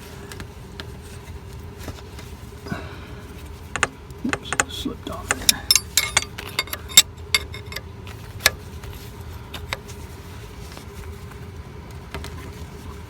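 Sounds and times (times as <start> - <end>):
steady low hum: 0.0 - 13.0
metallic clicks of wrenches: 3.8 - 7.8.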